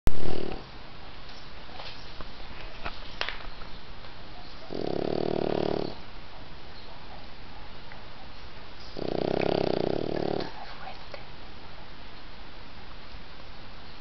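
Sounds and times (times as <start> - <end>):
pet snoring: 0.2 - 0.7, 4.6 - 6.0, 8.9 - 10.6.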